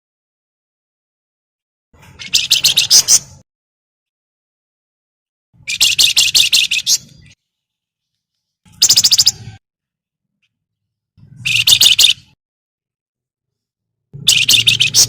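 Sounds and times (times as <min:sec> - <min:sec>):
bird chattering call: 0:08.8 - 0:09.4, 0:14.2 - 0:15.0.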